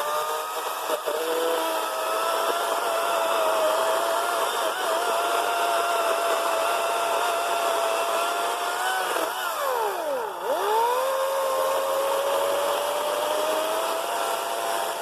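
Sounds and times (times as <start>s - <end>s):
battery chainsaw whining: 0.0s - 15.0s.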